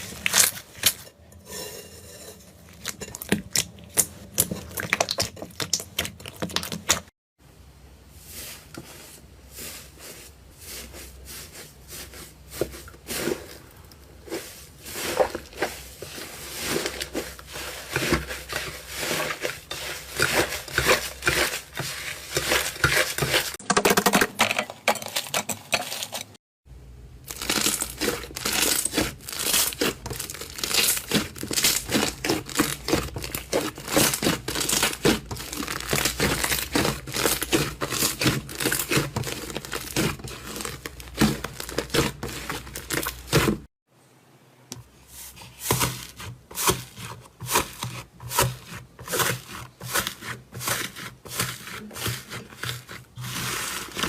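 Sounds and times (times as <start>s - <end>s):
slime crackling and popping: 3.4s - 7.0s, 27.3s - 43.6s.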